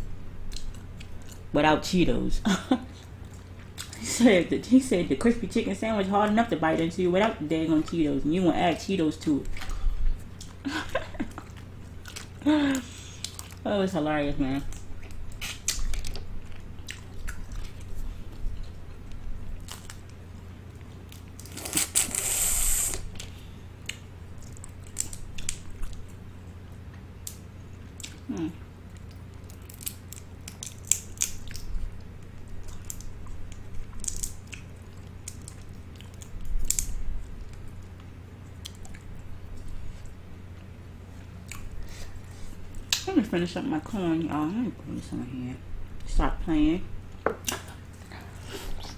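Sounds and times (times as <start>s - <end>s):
steady low hum: 0.0s - 48.9s
person chewing food: 0.4s - 1.5s, 2.9s - 4.0s, 9.5s - 13.6s, 14.7s - 43.0s.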